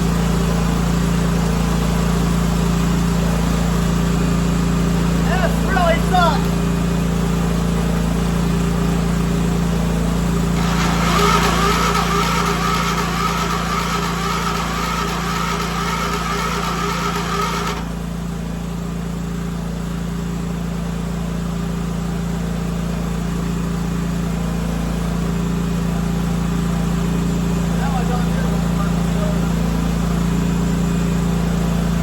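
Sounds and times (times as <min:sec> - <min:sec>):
lawn tractor engine running: 0:00.0 - 0:32.0.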